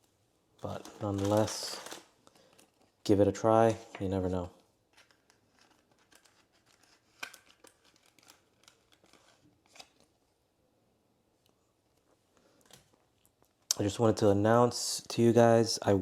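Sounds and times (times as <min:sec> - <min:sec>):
trading cards clicking and rustling: 0:00.6 - 0:02.9, 0:04.9 - 0:10.1.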